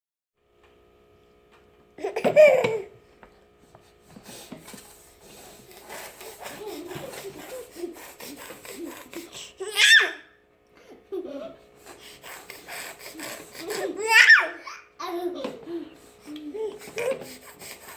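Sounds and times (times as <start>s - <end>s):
baby laughing: 2.0s - 2.9s, 5.8s - 10.2s, 13.1s - 17.4s
baby babbling: 8.6s - 10.2s, 13.1s - 17.3s
baby squealing: 9.6s - 10.2s, 14.0s - 14.8s.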